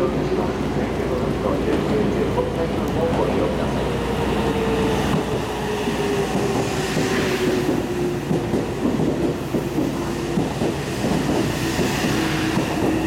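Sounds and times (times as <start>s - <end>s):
train wheels clicking on rail joints: 4.6s - 13.0s.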